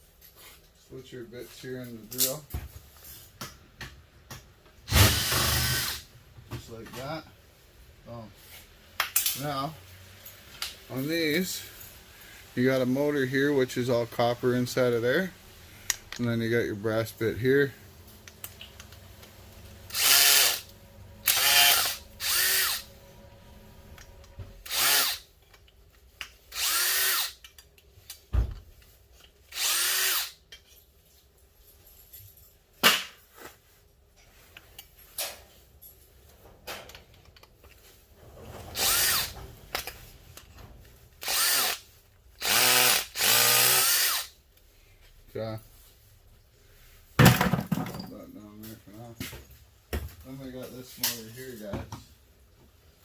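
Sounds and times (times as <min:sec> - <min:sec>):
power drill running: 0:05.0 - 0:06.0, 0:19.9 - 0:23.0, 0:24.6 - 0:25.2, 0:26.5 - 0:27.4, 0:29.5 - 0:30.4, 0:38.7 - 0:39.4, 0:41.2 - 0:41.8, 0:42.4 - 0:44.3.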